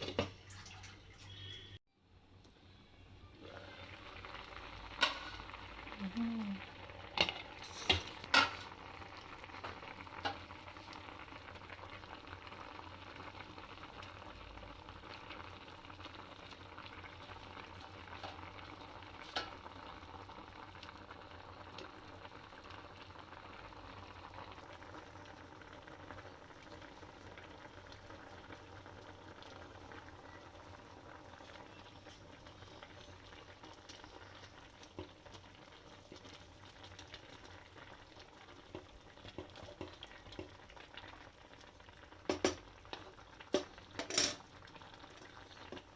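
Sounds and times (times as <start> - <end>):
food bubbling and sizzling in a pot: 0.0 - 2.5, 3.3 - 45.9
utensil clinking against pot: 43.6 - 44.4.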